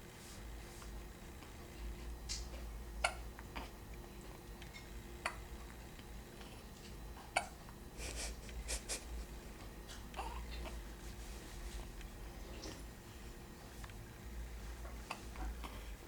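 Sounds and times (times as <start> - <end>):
baby snuffling: 8.0 - 9.1.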